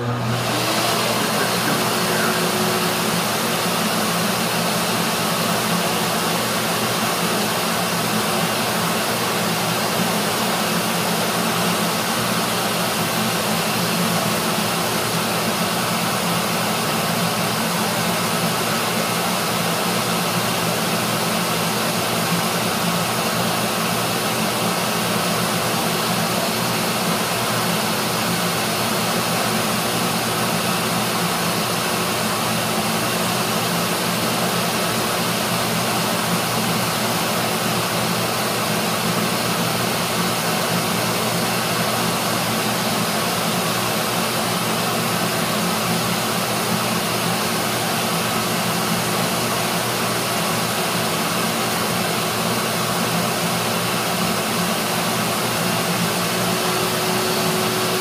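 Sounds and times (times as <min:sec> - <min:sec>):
low motor hum: 0:00.0 - 0:04.8, 0:56.3 - 0:58.0
heat gun blowing air: 0:00.0 - 0:16.2, 0:53.6 - 0:58.0.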